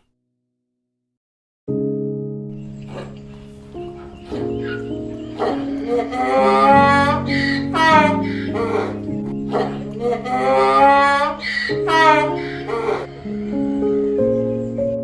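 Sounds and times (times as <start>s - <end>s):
gentle guitar music: 1.8s - 15.0s
animal wavering cry: 2.8s - 13.7s.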